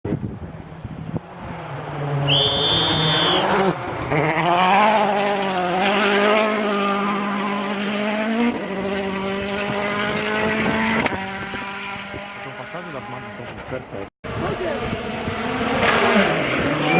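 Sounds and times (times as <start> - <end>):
car engine at high revs: 0.3 - 16.9
high whistle: 2.2 - 3.6.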